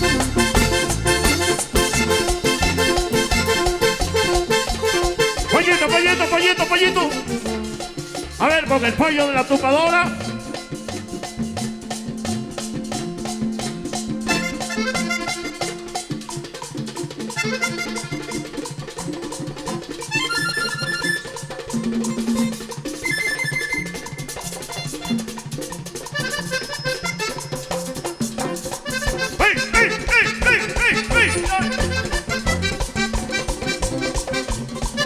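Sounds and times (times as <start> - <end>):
bass: 0.0 - 15.8, 28.8 - 35.0
accordion melody: 0.0 - 35.0
latin percussion: 0.0 - 35.0.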